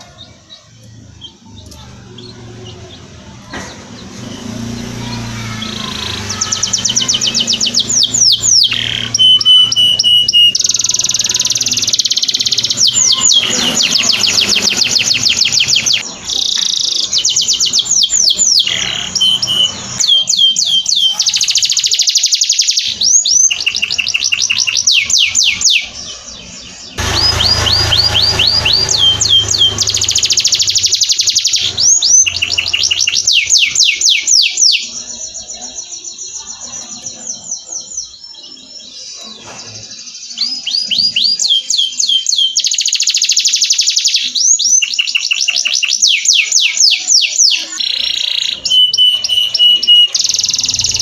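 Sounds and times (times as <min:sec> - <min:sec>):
canary singing trills: 0:00.0 - 0:51.0.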